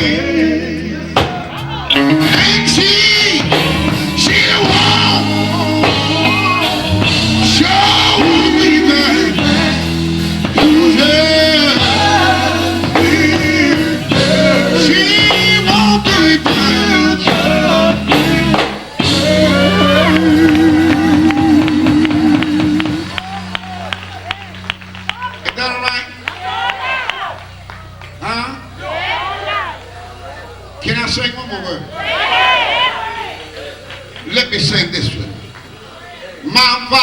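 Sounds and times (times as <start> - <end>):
gospel quartet singing: 0.0 - 23.9, 25.5 - 37.0
band with bass notes: 0.0 - 37.0.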